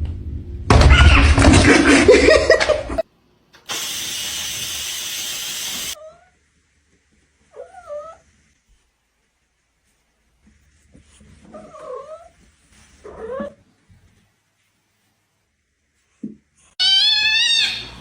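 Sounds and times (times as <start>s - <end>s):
cat mewing: 16.8s - 18.0s.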